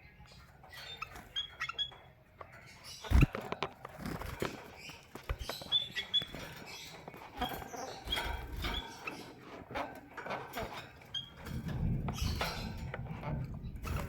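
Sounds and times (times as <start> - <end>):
birds hopping and pecking in cage: 0.0 - 14.0
high bird chirps: 4.0 - 9.4.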